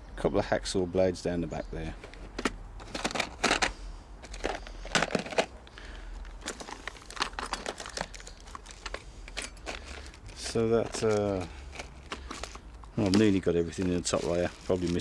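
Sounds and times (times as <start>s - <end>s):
crinkling: 1.9s - 15.0s
small items clicking and knocking: 2.0s - 15.0s.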